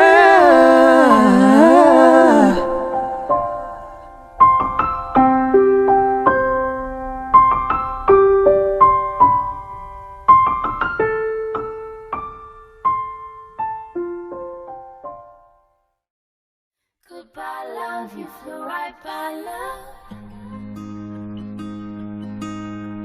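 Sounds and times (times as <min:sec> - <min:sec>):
slow solo piano melody: 0:00.0 - 0:15.8.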